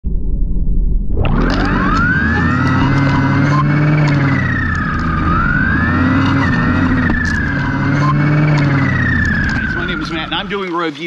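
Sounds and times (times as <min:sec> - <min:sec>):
steady low hum: 0:00.0 - 0:10.7
siren wailing: 0:01.2 - 0:11.0.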